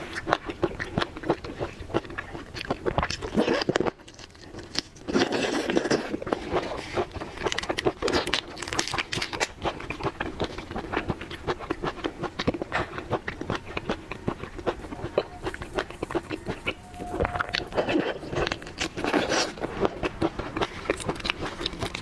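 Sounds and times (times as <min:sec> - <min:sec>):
seafood being chewed: 0:00.0 - 0:22.0.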